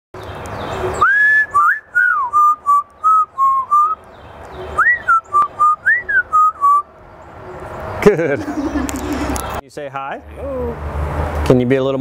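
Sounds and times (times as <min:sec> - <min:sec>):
parrot whistling a tune: 0:01.0 - 0:04.0, 0:04.8 - 0:06.8.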